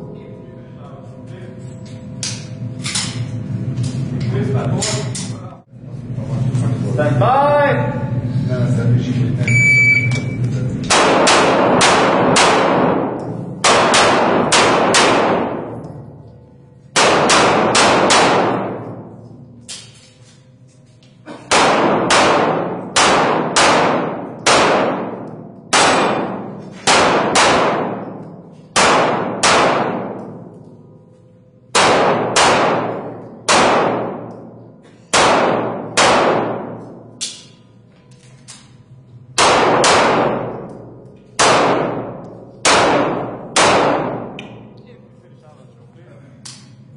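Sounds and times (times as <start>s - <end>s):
handgun shots echoing: 10.9s - 16.0s, 17.0s - 19.1s, 21.5s - 30.7s, 31.7s - 37.6s, 39.4s - 44.6s.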